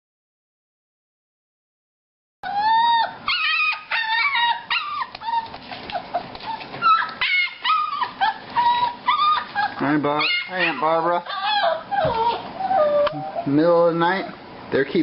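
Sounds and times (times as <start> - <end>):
puppies and dog howling and yelping: 2.4 - 14.3.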